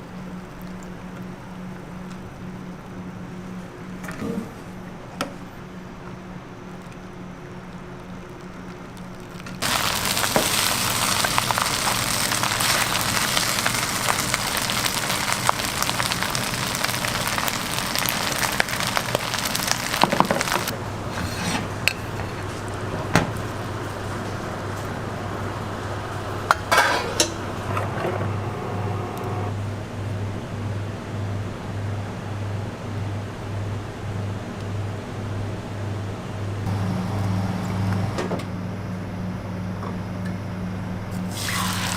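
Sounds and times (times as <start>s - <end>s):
food sizzling in a hot pan: 9.6s - 20.7s, 41.3s - 41.9s
cooking utensils clinking: 26.5s - 27.4s.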